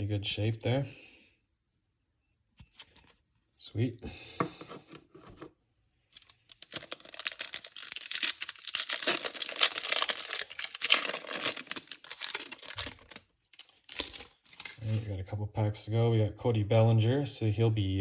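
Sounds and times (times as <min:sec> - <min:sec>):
foil wrapper tearing and crinkling: 0:06.2 - 0:14.7.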